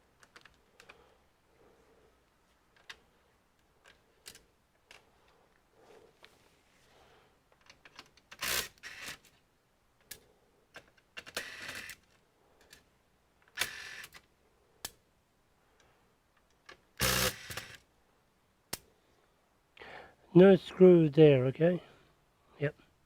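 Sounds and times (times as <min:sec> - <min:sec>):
sharp clicks of small parts: 0:10.0 - 0:15.0, 0:15.8 - 0:17.8.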